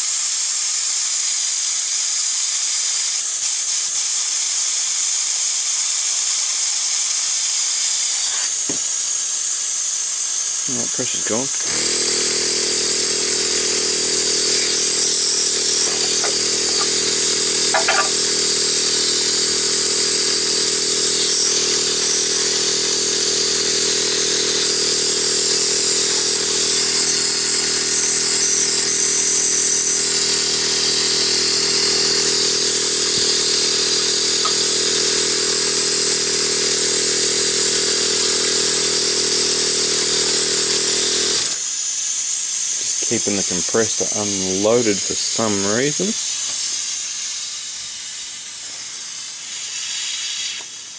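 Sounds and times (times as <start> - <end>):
air compressor motor hum: 0.0 - 50.9
hiss of escaping air: 44.2 - 50.9.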